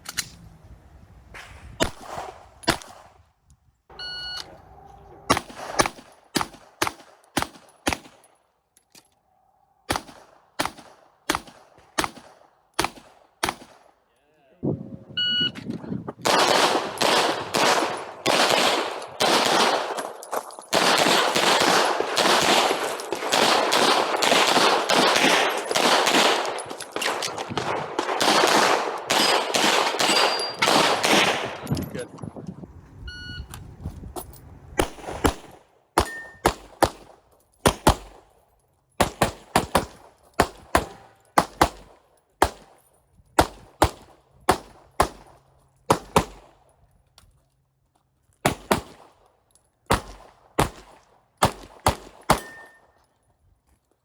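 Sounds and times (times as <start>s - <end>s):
pistol shots: 1.8s - 3.1s, 5.3s - 8.3s, 9.9s - 14.0s, 16.2s - 31.7s, 34.8s - 38.3s, 39.0s - 42.8s, 43.4s - 46.6s, 48.4s - 49.2s, 49.9s - 52.8s
shot timer beep: 4.0s - 4.5s, 15.2s - 15.6s
rapid echoing gunfire barrage: 5.3s - 8.2s, 9.9s - 14.0s, 16.2s - 31.7s, 34.8s - 38.3s, 39.0s - 42.8s, 45.9s - 46.6s, 48.5s - 49.2s, 49.9s - 52.6s.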